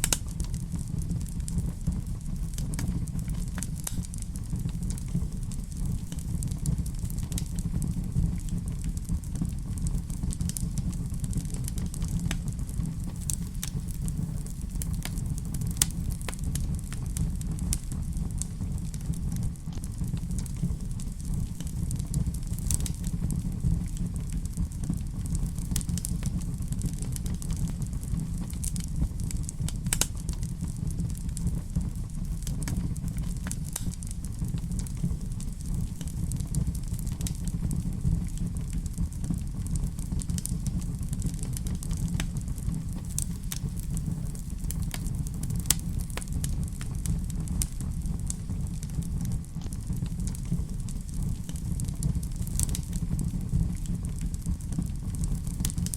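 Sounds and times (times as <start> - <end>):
fireplace fire crackling: 0.0 - 55.9
low rumble: 0.0 - 55.9.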